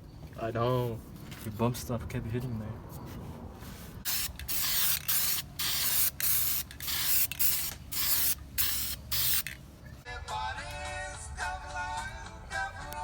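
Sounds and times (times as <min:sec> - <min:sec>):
short hissing spray bursts: 0:04.0 - 0:09.5.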